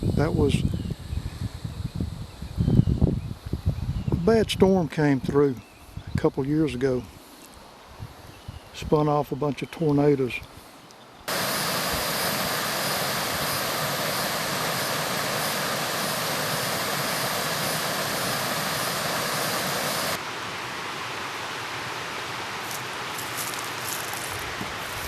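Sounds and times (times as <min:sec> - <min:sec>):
water pouring over a dam: 0:11.3 - 0:20.2, 0:22.4 - 0:25.0.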